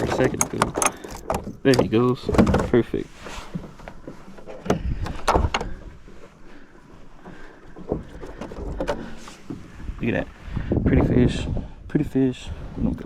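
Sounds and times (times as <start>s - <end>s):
knocks and clatters on kayak: 0.0s - 10.3s.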